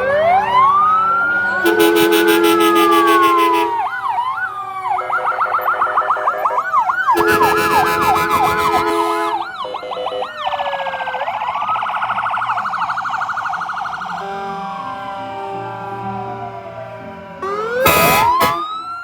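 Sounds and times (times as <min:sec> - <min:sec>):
electronic sirens yelping and wailing: 0:00.0 - 0:19.0.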